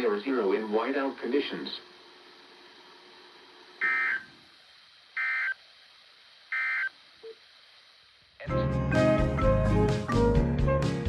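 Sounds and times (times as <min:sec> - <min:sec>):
screeching digital data tone: 0:03.8 - 0:04.3, 0:05.2 - 0:05.6, 0:06.5 - 0:06.9
music: 0:08.4 - 0:11.0.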